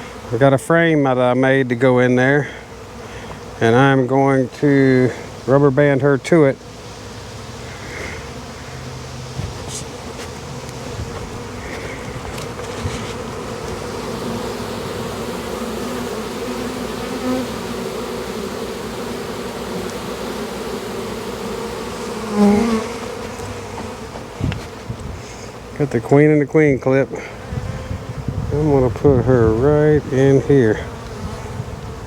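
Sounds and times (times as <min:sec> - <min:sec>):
bees buzzing: 0:00.0 - 0:32.0.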